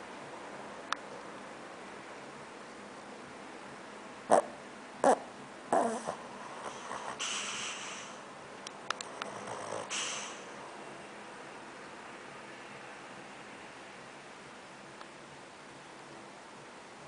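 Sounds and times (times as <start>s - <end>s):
dog snorting: 4.3s - 8.1s, 9.0s - 10.4s
dog hissing breaths: 6.1s - 8.3s, 9.2s - 10.6s.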